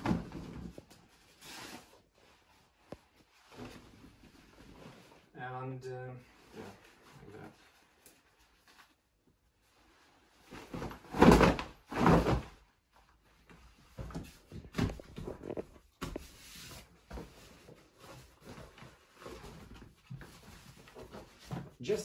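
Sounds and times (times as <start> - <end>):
fabric rustling: 6.3 - 21.5.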